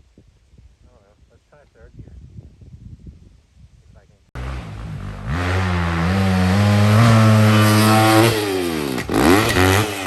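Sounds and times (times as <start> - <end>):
dirt bike engine revving: 4.4 - 10.0.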